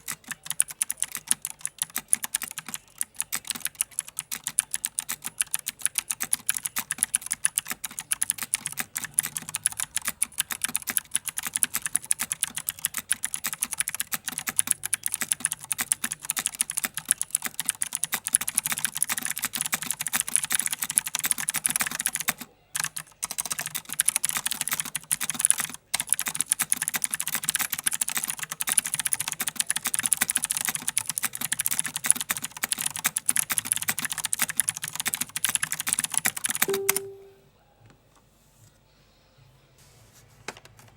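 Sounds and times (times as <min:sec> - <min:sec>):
mechanical keyboard key clicks: 0:00.0 - 0:37.2.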